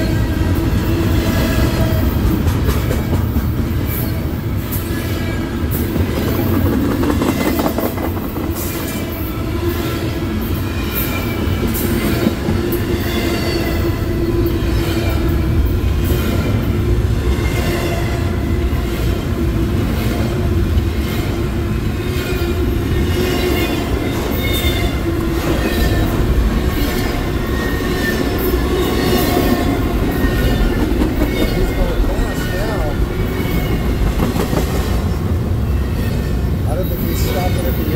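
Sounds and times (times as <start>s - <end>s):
freight train rumbling past: 0.0s - 37.9s
wheels squealing on rails: 0.0s - 37.9s.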